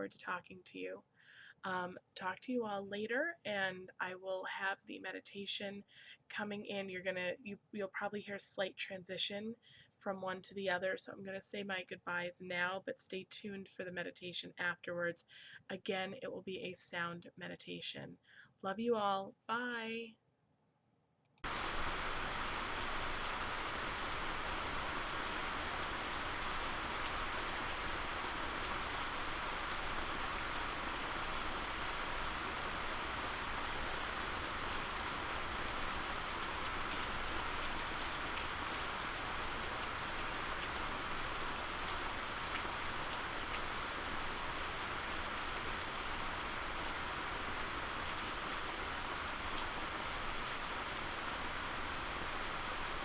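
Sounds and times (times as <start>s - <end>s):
steady rain hiss: 21.4s - 53.0s.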